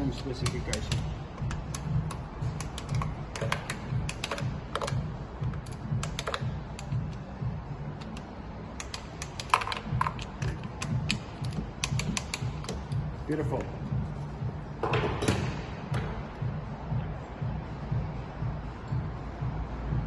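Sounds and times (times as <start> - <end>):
socket ratchet clicking: 0.4 - 7.2, 7.9 - 13.1.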